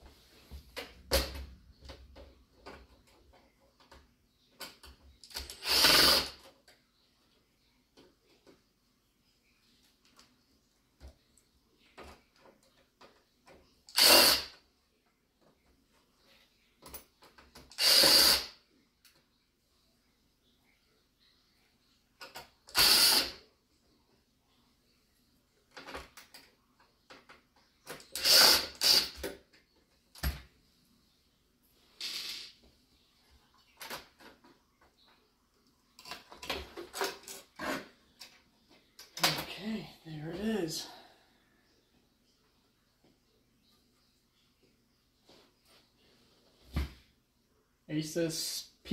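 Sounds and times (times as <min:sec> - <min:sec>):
screws and parts clicking: 0:04.6 - 0:06.4, 0:13.9 - 0:14.6, 0:17.6 - 0:18.5, 0:22.2 - 0:23.4, 0:27.9 - 0:29.4
cordless drill driver bursts: 0:05.3 - 0:06.4, 0:13.9 - 0:14.6, 0:17.7 - 0:18.5, 0:22.7 - 0:23.4, 0:28.1 - 0:29.2.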